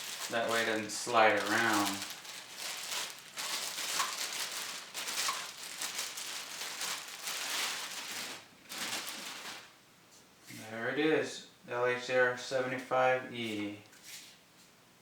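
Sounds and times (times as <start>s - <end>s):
packaging rustling and crinkling: 0.0s - 9.7s.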